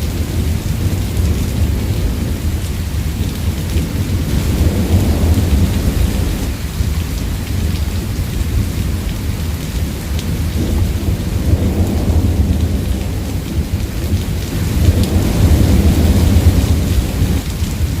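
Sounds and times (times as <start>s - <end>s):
heavy rain: 0.0s - 18.0s
thunder rumbling: 0.0s - 18.0s.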